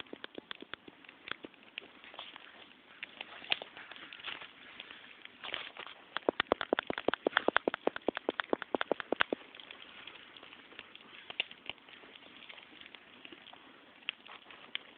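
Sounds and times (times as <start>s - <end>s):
campfire wood crackling: 0.0s - 14.9s.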